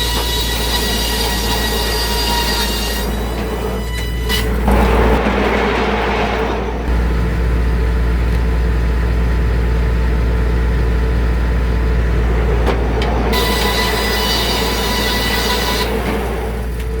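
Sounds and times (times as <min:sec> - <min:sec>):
saw blade cutting wood: 0:00.0 - 0:07.0, 0:13.3 - 0:17.0
sawmill machine hum: 0:00.0 - 0:17.0.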